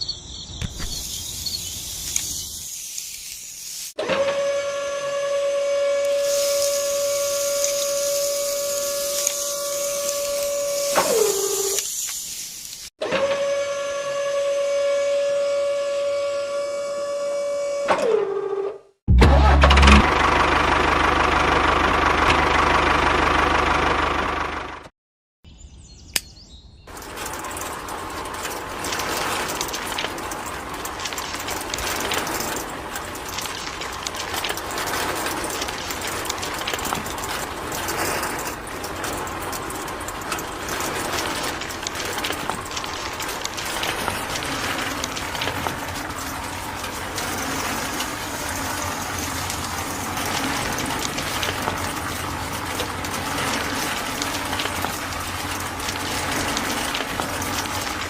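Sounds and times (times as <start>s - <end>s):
plastic gears rattling: 26.9s - 58.0s.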